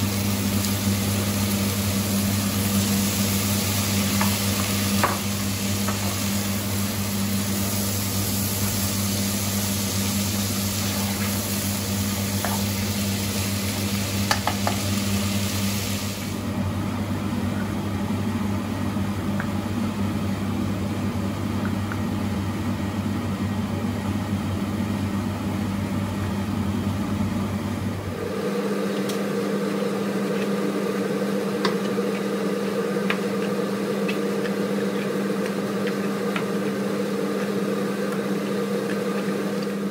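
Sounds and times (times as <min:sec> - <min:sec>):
mechanical hum with hiss: 0:00.0 - 0:39.9.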